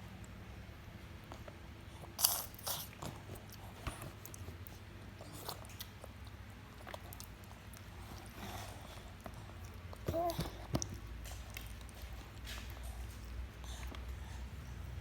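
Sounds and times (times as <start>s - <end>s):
child chewing food: 0.1s - 15.0s.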